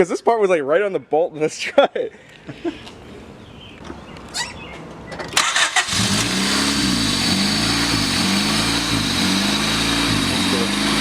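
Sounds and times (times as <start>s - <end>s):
engine starter cranking: 5.2s - 7.0s
loud car engine revving: 5.4s - 11.0s.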